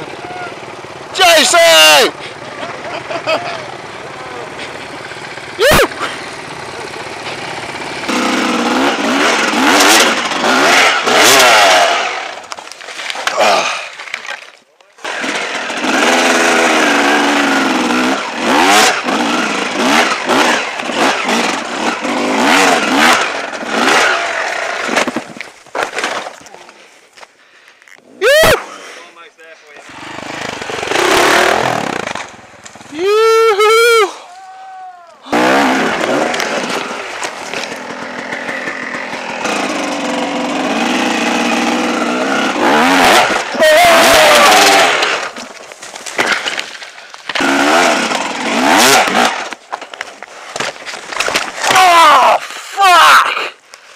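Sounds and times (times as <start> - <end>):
dirt bike engine revving: 0.0 - 12.5, 15.0 - 25.3, 29.8 - 33.8, 35.2 - 49.9.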